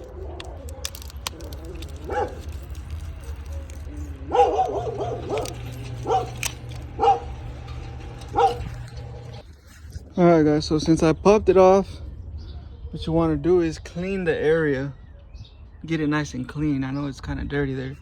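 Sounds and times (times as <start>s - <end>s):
dog barking and yelping: 0.0s - 9.4s
steady low hum: 0.0s - 9.5s.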